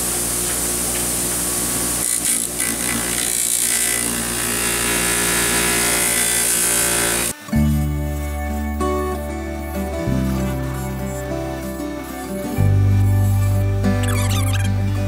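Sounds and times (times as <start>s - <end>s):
metal rubbing on abrasive wheel: 9.6s - 14.7s.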